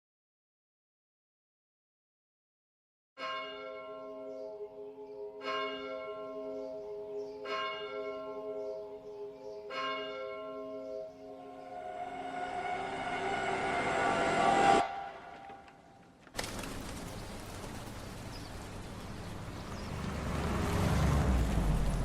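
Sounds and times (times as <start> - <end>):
rising swell of noise: 11.2 - 16.2.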